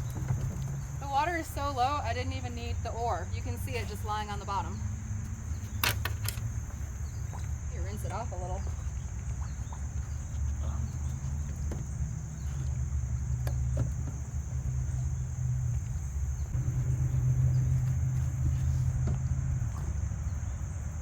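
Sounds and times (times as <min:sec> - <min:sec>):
boat motor running: 0:00.0 - 0:21.0
light knocks: 0:09.4 - 0:16.6.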